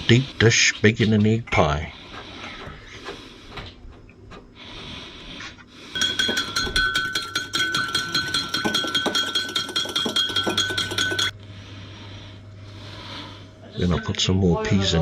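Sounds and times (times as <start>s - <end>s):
utensil tapping on ringing dish: 6.0s - 11.4s.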